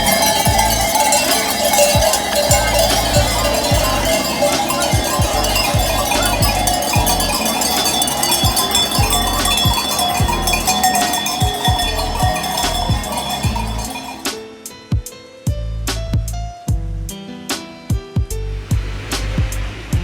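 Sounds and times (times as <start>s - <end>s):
cowbells clanging: 0.0s - 14.5s
low thuds: 18.5s - 20.0s.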